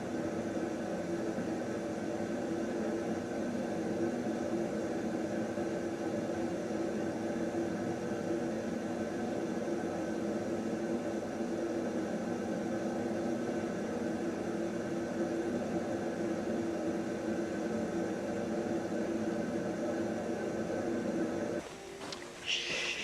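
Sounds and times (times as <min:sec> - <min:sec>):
steady machine hum: 0:00.0 - 0:23.0.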